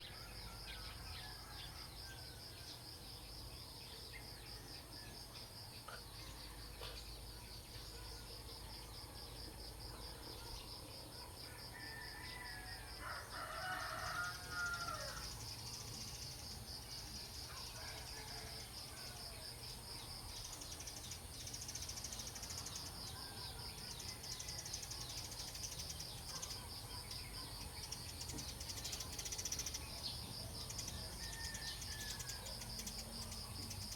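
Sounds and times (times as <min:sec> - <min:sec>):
crickets chirping: 0:00.0 - 0:33.9
rooster crowing: 0:11.7 - 0:15.3, 0:17.8 - 0:19.4, 0:31.0 - 0:32.6.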